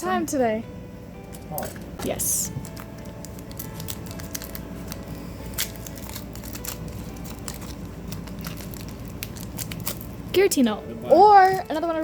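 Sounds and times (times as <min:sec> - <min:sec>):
foil wrappers crinkling: 0:02.4 - 0:10.2
trading cards handled: 0:02.5 - 0:10.0.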